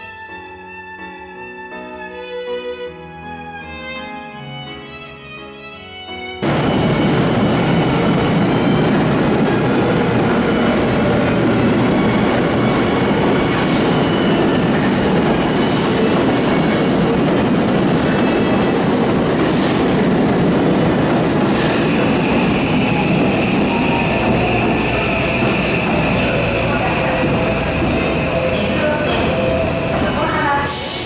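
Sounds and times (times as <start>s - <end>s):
train wheels rumbling on rail: 6.4s - 31.0s.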